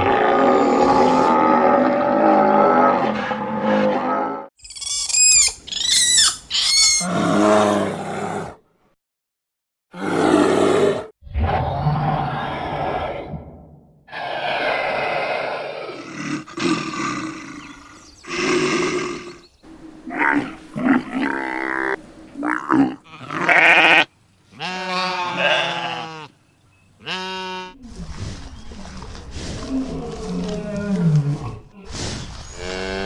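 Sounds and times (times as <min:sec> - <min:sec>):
pitched farm animal calls: 0:04.6 - 0:07.4, 0:16.0 - 0:26.4, 0:27.0 - 0:28.3
rough noisy farm animal calls: 0:04.7 - 0:07.1, 0:16.0 - 0:26.4.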